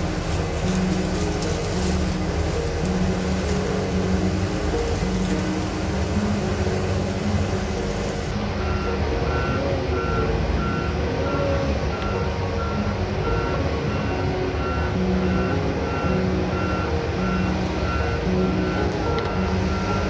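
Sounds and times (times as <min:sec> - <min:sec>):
heavy diesel machinery running: 0:00.0 - 0:20.0
reversing alarm beeping: 0:08.6 - 0:20.0.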